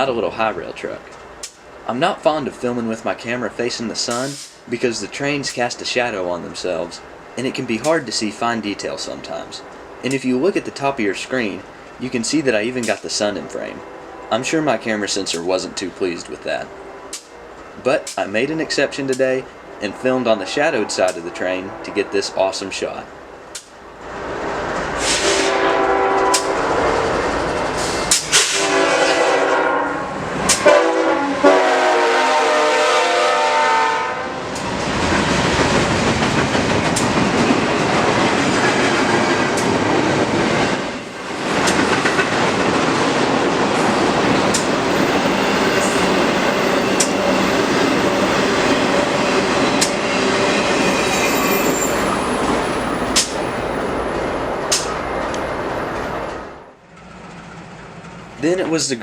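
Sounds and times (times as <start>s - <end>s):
train wheels on rails: 0.8s - 21.4s, 22.8s - 32.2s, 34.4s - 58.9s
locomotive air horn blasts: 25.0s - 26.8s, 28.3s - 34.6s.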